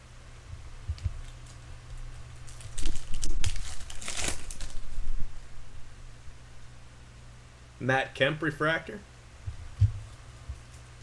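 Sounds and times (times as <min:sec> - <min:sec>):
foil wrapper crinkling and tearing: 0:01.2 - 0:05.2.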